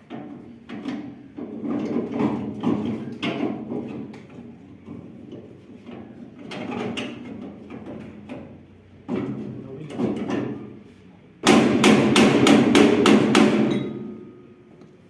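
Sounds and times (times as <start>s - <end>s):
metal knocking and scraping: 0.0s - 10.7s.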